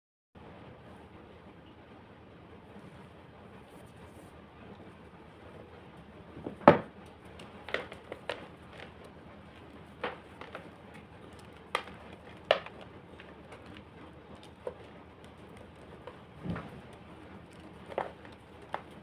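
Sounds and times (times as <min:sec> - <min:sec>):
chalk crunching: 0:07.1 - 0:19.0.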